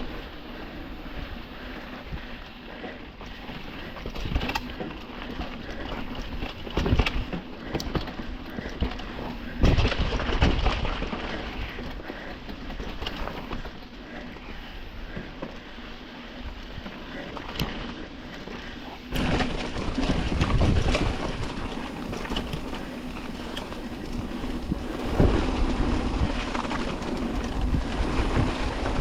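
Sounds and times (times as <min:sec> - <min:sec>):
mountain bike rattling: 0:00.0 - 0:29.0
bike knocking on bumps: 0:02.8 - 0:15.6, 0:19.1 - 0:29.0
wind rushing over microphone: 0:19.0 - 0:29.0
tyres crunching on dirt: 0:19.1 - 0:29.0.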